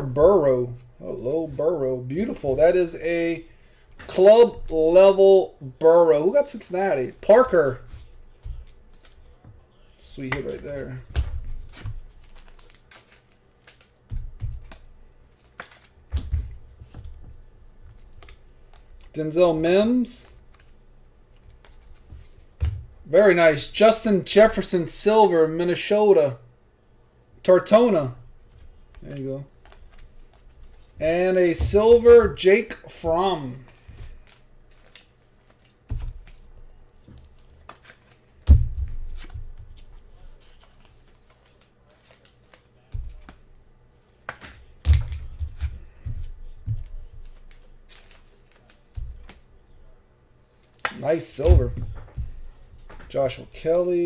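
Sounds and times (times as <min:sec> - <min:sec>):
trading cards clicking and rustling: 0:10.1 - 0:17.3, 0:17.9 - 0:22.4, 0:28.8 - 0:43.4, 0:44.0 - 0:49.7
cards clicking and snapping: 0:10.2 - 0:17.2, 0:33.6 - 0:36.4, 0:44.2 - 0:49.4.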